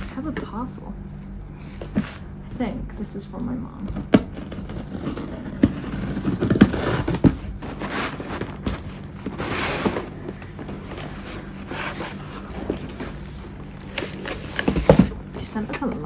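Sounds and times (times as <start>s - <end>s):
cardboard scraping and rustling: 4.0s - 16.0s.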